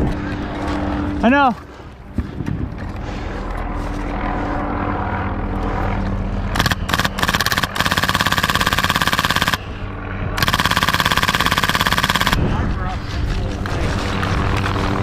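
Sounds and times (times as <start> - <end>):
automatic gunfire bursts: 6.5 - 9.6, 10.4 - 12.4.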